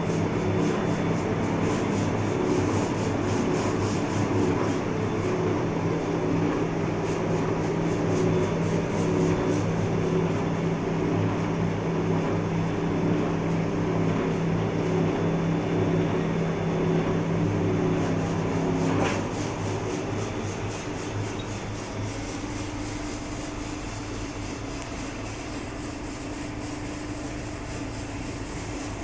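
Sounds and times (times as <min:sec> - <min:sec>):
lathe running: 0:00.4 - 0:09.1.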